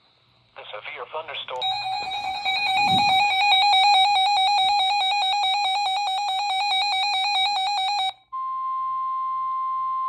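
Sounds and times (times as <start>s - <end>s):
electronic alert tone fluttering: 1.6s - 4.8s.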